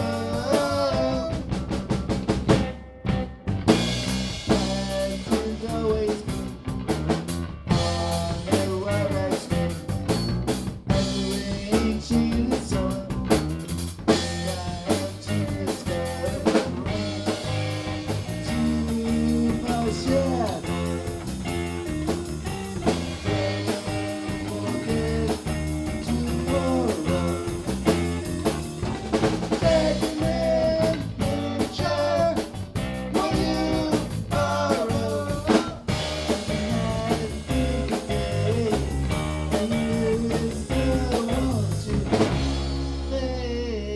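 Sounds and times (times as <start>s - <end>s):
drum hits and rim shots: 0.0s - 43.0s
rock band playing: 0.0s - 43.7s.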